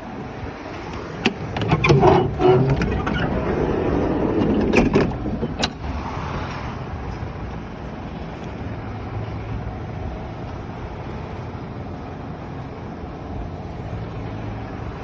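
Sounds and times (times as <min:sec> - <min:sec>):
sharp clicks and knocks: 0:00.9 - 0:03.3, 0:04.4 - 0:05.9.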